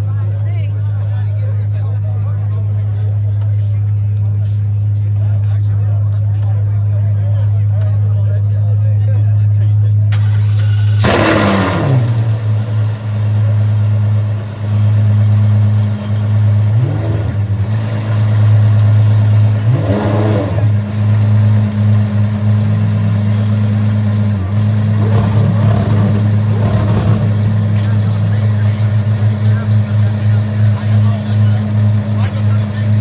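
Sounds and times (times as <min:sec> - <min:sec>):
car engine idling and revving: 0:10.1 - 0:33.0.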